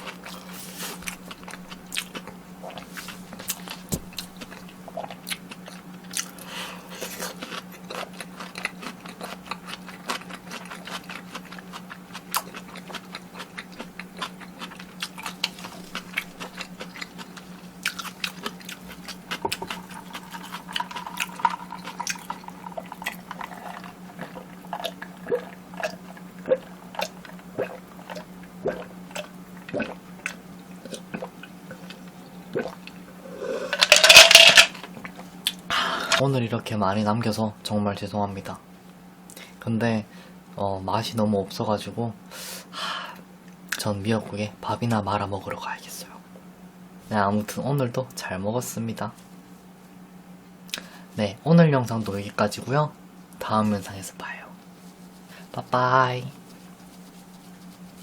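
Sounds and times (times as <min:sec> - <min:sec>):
chewing fried food crunches: 0:00.0 - 0:33.1, 0:54.6 - 0:58.0
low electrical hum: 0:00.0 - 0:58.0.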